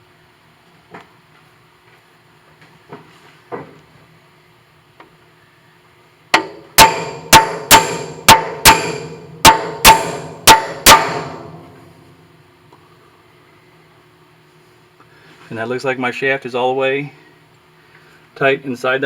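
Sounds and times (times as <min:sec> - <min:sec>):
hammer blows on metal: 0:06.4 - 0:12.1.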